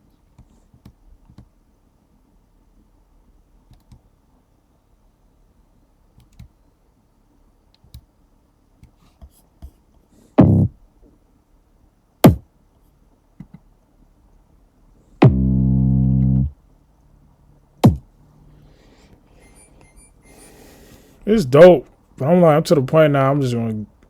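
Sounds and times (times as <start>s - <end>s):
computer mouse clicks: 3.7s - 4.0s, 6.2s - 6.5s
low kick drum: 10.4s - 10.8s, 15.2s - 16.5s, 17.8s - 18.0s
sharp drum hit: 15.2s - 15.5s, 17.8s - 18.0s
low synth bass note: 15.2s - 16.5s.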